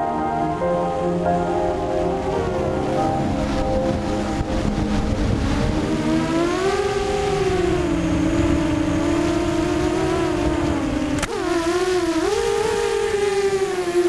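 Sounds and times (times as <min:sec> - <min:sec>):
rushing noise: 0:00.0 - 0:14.0
quadcopter motors whining: 0:03.0 - 0:14.0.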